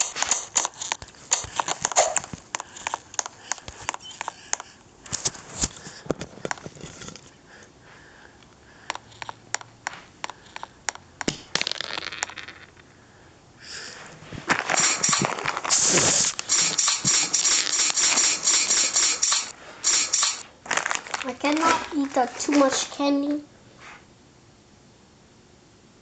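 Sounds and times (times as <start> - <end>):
plastic packaging crinkling: 0.0 - 7.0, 14.5 - 16.8, 20.4 - 23.0.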